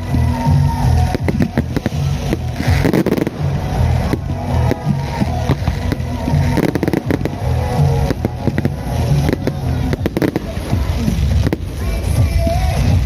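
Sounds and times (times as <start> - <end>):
fireworks bangs and crackles: 0.0 - 13.0
music with heavy low beat: 0.0 - 13.0.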